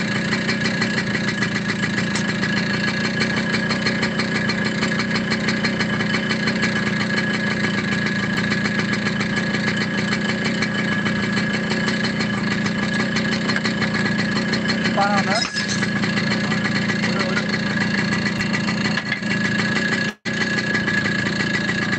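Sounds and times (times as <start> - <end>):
motorcycle engine idling: 0.0 - 21.9.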